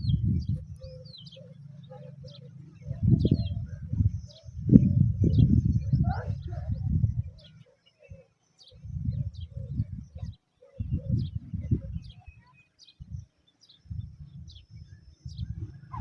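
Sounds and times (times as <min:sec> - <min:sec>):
small birds chirping: 0:00.0 - 0:16.0.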